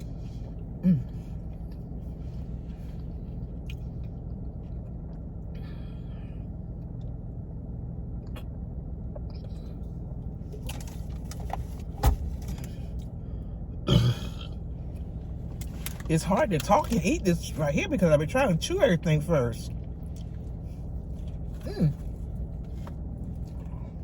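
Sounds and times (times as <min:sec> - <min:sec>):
car engine idling: 0:00.0 - 0:24.0.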